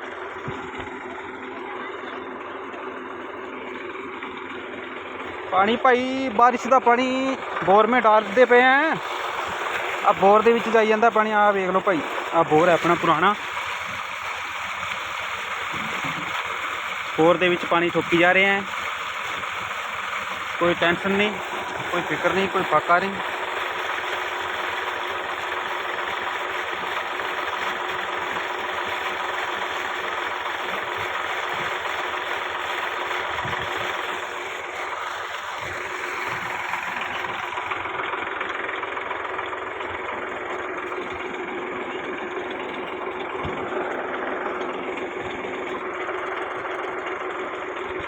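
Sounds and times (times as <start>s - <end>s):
engine running: 0.0s - 48.0s
water rushing: 4.6s - 38.6s.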